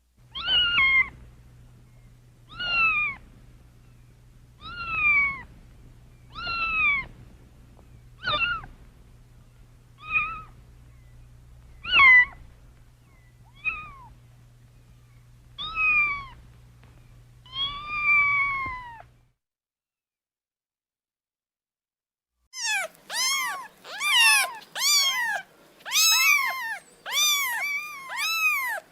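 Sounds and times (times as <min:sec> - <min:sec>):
faint low hum: 0:00.0 - 0:19.4, 0:22.6 - 0:28.9
cat meowing: 0:00.3 - 0:01.1, 0:02.5 - 0:03.2, 0:04.6 - 0:05.5, 0:06.3 - 0:07.1, 0:08.2 - 0:08.7, 0:10.0 - 0:10.5, 0:13.5 - 0:14.1, 0:15.6 - 0:16.4, 0:17.5 - 0:19.1, 0:22.6 - 0:28.9.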